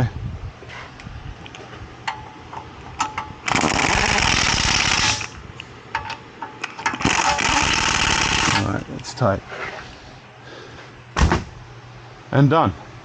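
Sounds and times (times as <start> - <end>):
impact wrench hammering: 6.8 - 8.6.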